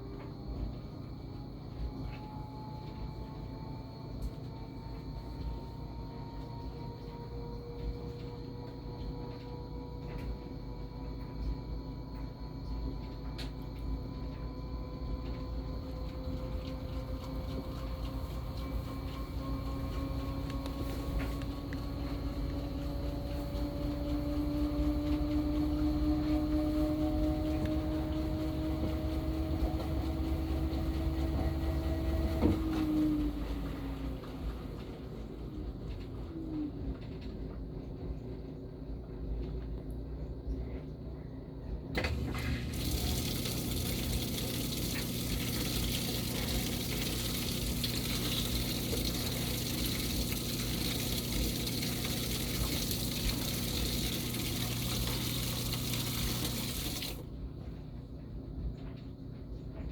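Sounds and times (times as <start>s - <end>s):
washing machine drum spinning: 0.0s - 38.5s, 41.9s - 58.5s
washing machine click: 42.0s - 57.2s.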